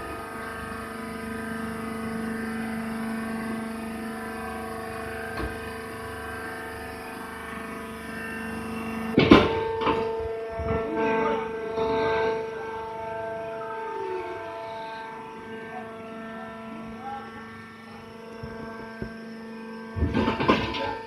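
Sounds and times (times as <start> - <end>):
hydraulic press humming: 0.0 - 21.0.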